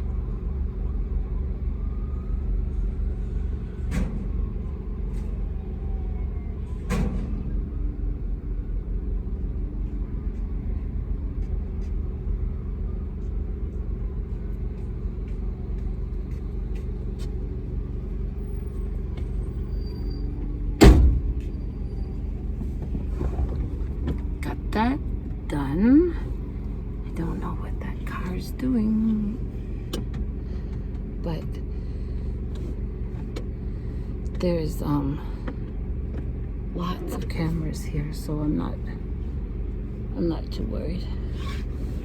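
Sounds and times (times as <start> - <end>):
car engine running: 6.5 - 42.0
loud thump: 20.8 - 21.7.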